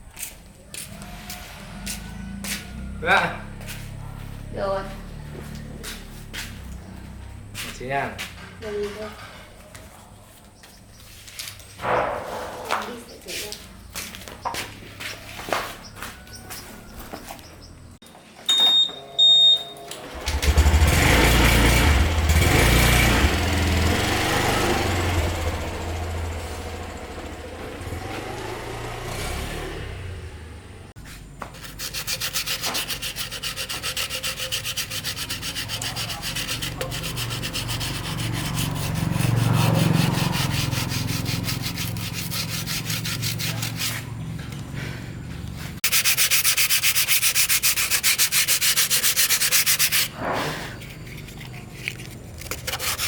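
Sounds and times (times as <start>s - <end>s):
loud rushing noise: 11.8s - 13.0s
short high beeps: 18.5s - 19.9s
sanding with fast rasping: 31.4s - 44.2s, 45.7s - 53.0s.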